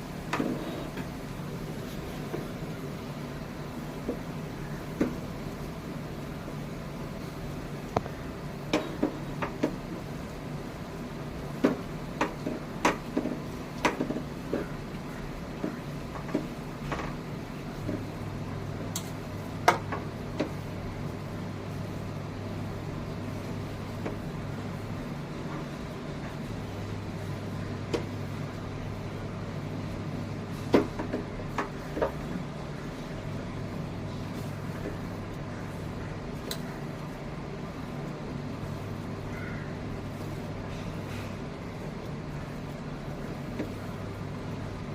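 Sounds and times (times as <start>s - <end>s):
steady low hum: 0.0s - 44.9s
spatula knocking and scraping pan: 8.7s - 10.0s, 11.5s - 14.8s.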